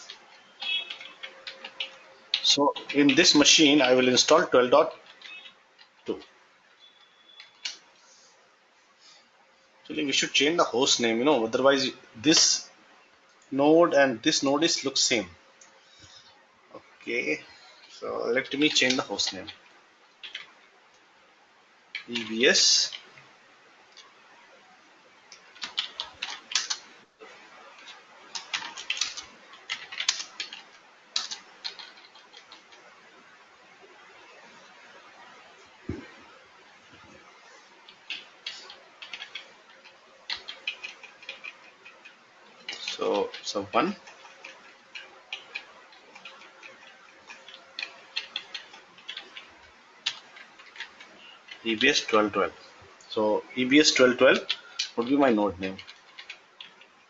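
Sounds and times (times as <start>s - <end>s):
typing on keyboard: 0.0s - 4.1s, 4.9s - 7.9s, 18.5s - 20.5s, 25.3s - 26.9s, 27.7s - 32.9s, 37.8s - 52.2s, 53.8s - 56.9s.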